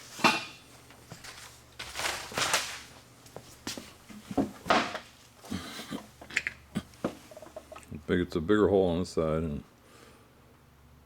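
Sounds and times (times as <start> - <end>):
rustling handling noises: 0.0 - 5.5.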